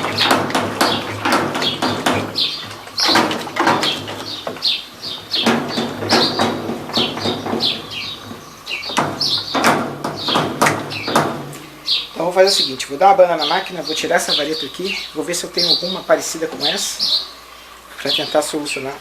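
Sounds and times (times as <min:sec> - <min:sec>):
suspension rod squeaking and knocking: 0:00.0 - 0:12.0
washing machine motor hum: 0:00.0 - 0:19.0.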